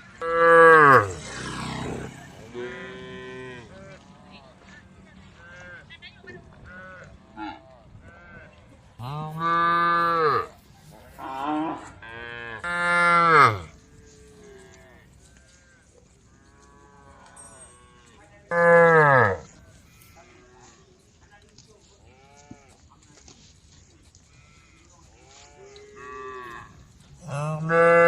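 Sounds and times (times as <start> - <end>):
cows mooing: 0.2 - 4.0, 8.2 - 10.5, 11.1 - 15.8, 18.0 - 19.5, 25.6 - 28.0.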